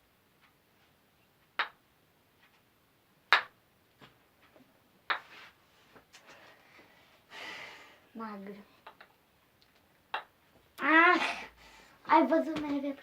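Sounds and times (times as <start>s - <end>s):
wooden ball clacking in cups: 1.5s - 1.8s, 3.3s - 3.6s, 8.8s - 10.4s.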